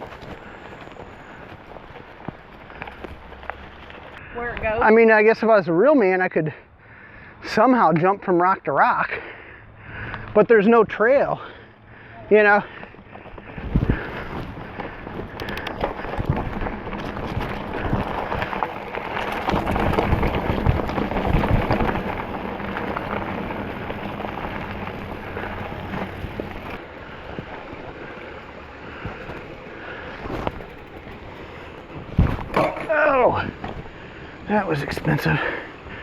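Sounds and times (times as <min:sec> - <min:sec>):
mountain bike clattering over rocks: 0:12.7 - 0:34.1.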